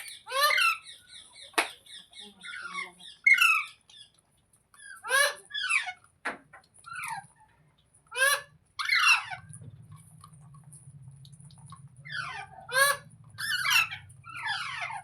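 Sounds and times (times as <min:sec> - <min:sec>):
parakeet squawks: 0:04.8 - 0:06.0, 0:12.0 - 0:15.0
low steady hum: 0:06.7 - 0:15.0.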